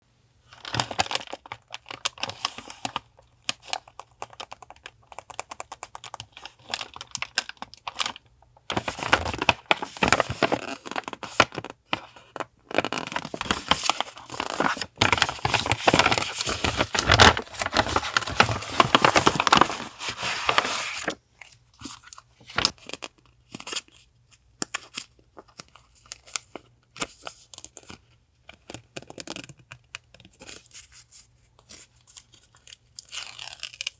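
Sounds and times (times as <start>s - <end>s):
paper and packaging crinkling: 0.5s - 23.9s.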